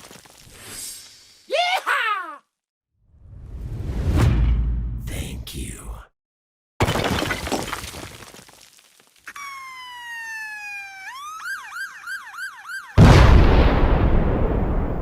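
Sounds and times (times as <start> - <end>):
whistle sliding down in pitch: 9.3 - 12.9
fast wavering siren-like whoop: 9.3 - 13.0.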